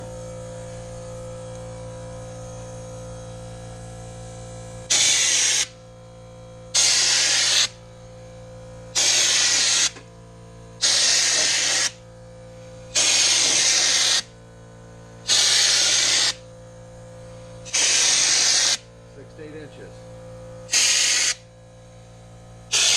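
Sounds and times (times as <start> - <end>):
steady low hum: 0.0 - 22.9
spray gun hissing: 4.9 - 5.7, 6.8 - 7.7, 9.0 - 10.0, 10.8 - 12.0, 13.0 - 14.2, 15.3 - 16.4, 17.7 - 18.8, 20.7 - 21.4.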